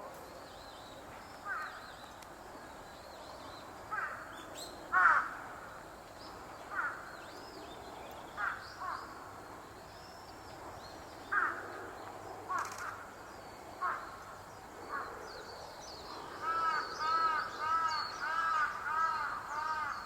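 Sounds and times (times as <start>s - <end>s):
crow cawing: 3.9s - 4.2s, 4.9s - 5.4s, 16.4s - 20.0s.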